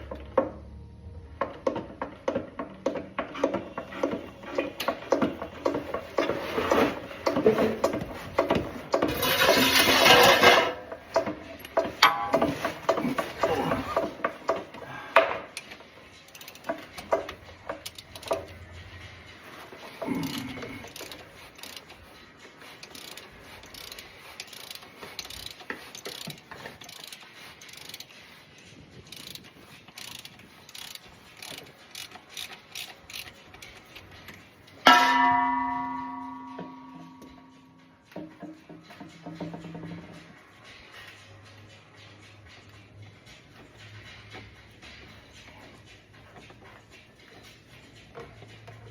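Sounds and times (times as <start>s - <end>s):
ratchet spanner clicking: 1.6s - 34.9s
loud metallic clang: 34.8s - 38.4s.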